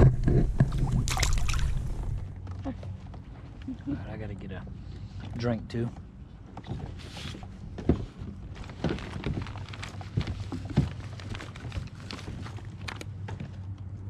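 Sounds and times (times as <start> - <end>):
low steady hum: 0.0 - 14.0
knocks of things handled: 6.5 - 13.8.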